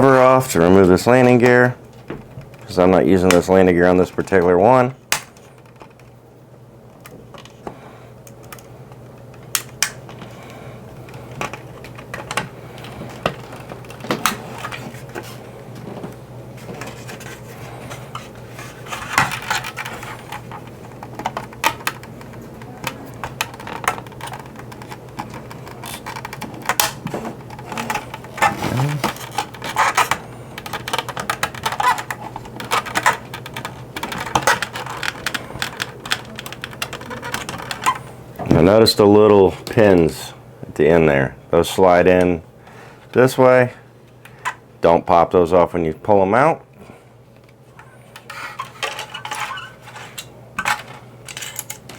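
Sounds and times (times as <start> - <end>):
plastic toy parts clattering: 18.1 - 38.0, 48.2 - 51.9.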